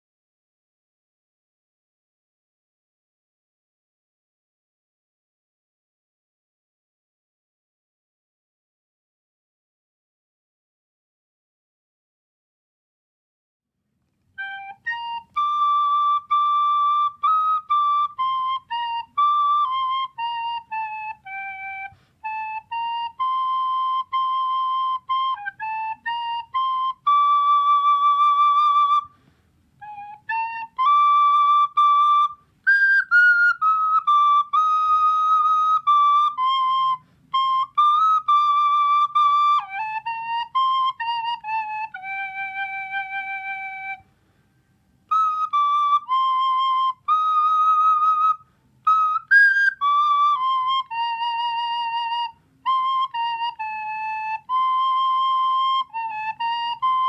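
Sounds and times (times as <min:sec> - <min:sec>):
solo flute melody: 0:14.3 - 0:57.0.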